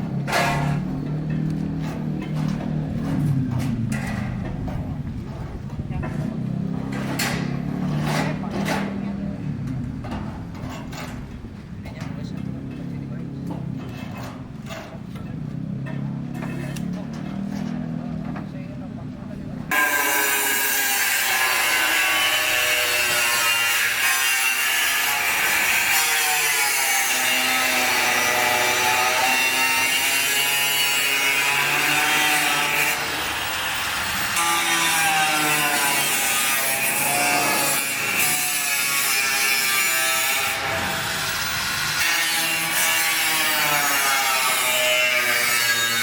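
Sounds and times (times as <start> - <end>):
electric saw cutting wood: 19.7 - 46.0.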